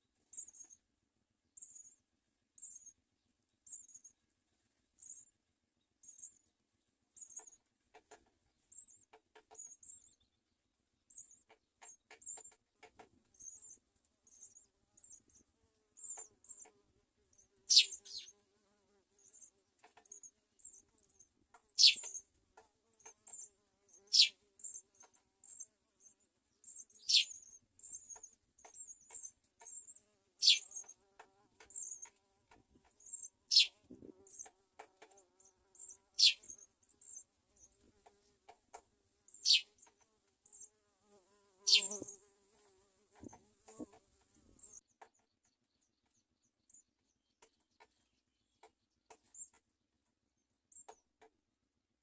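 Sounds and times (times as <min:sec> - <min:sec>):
nestlings begging cheeps: 0:17.7 - 0:18.3, 0:21.8 - 0:22.2, 0:23.3 - 0:24.8, 0:26.7 - 0:28.2, 0:29.1 - 0:30.9, 0:33.0 - 0:34.5, 0:35.8 - 0:37.2, 0:39.3 - 0:39.8, 0:41.6 - 0:42.2.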